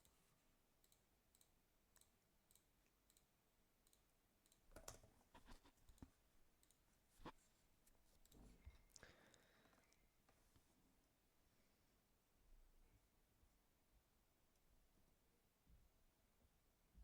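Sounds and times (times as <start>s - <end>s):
computer mouse clicks: 0.8s - 7.4s.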